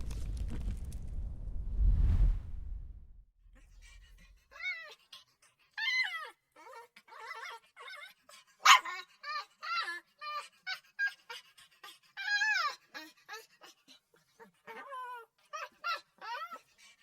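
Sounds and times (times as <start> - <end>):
puppy whimpering and yelping: 5.8 - 11.2, 12.2 - 13.7, 14.4 - 16.7
puppy whining: 5.8 - 11.3, 12.2 - 16.7.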